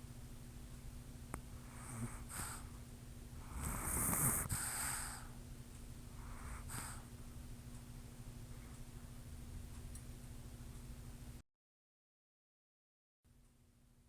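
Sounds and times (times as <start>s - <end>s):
person snoring and snorting: 3.5s - 5.1s
short breath: 4.3s - 5.4s.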